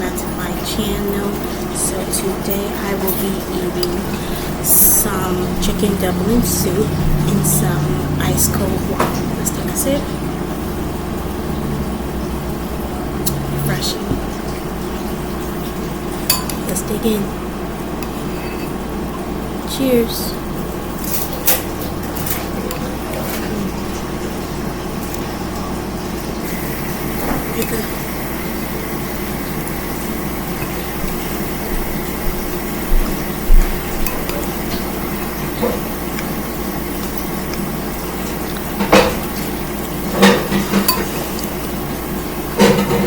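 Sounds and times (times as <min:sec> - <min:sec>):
mechanical hum: 0:00.0 - 0:43.0
spoon clinking against bowl: 0:16.3 - 0:16.7, 0:40.2 - 0:41.5.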